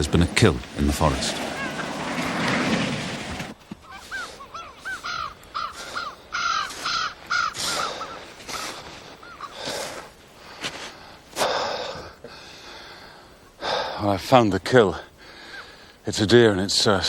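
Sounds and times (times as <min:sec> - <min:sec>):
rustling: 0:00.0 - 0:11.0
crows cawing: 0:01.5 - 0:02.0, 0:03.8 - 0:10.1.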